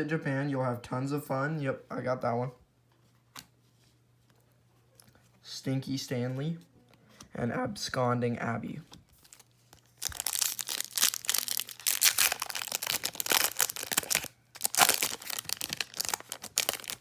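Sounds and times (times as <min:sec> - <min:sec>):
foil wrapper crinkling and tearing: 0:09.2 - 0:17.0.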